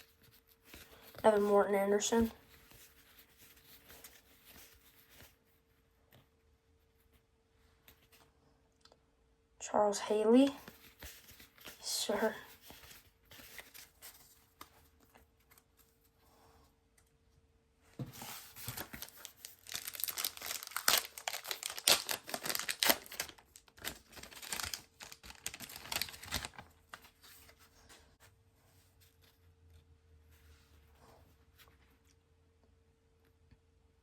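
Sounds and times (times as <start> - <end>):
wrapper tearing and crinkling: 18.6 - 26.6.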